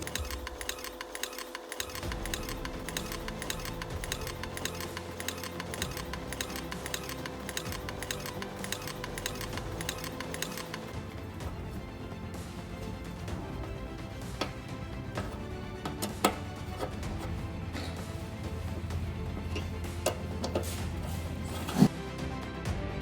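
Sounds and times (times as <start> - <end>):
fast mechanical clicking: 0.0 - 11.4.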